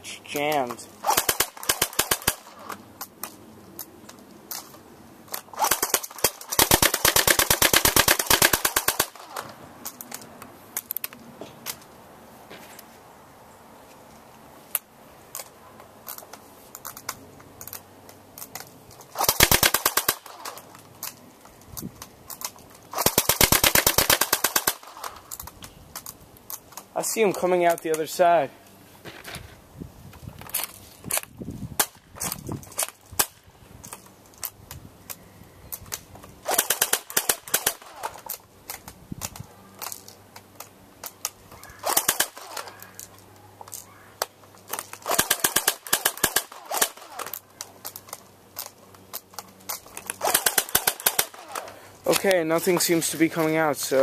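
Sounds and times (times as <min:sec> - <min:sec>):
airsoft gun full-auto bursts: 0:01.0 - 0:02.8, 0:05.5 - 0:09.5, 0:19.1 - 0:20.6, 0:22.9 - 0:25.4, 0:36.4 - 0:38.2, 0:41.8 - 0:42.8, 0:45.0 - 0:47.4, 0:50.2 - 0:51.8.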